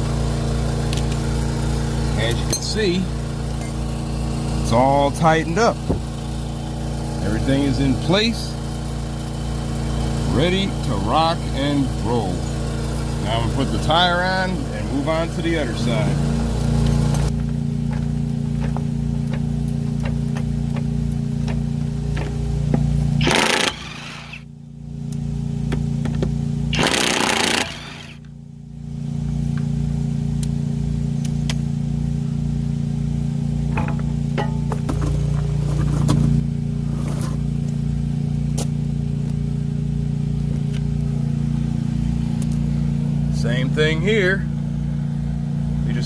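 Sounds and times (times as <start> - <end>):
low machine hum: 0.0 - 46.0
sharp clanks: 18.6 - 24.4, 33.7 - 36.2.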